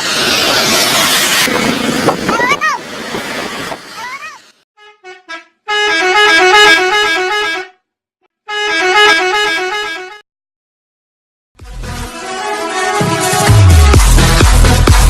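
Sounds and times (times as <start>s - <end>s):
bus musical horn: 4.8s - 10.2s, 11.6s - 14.8s.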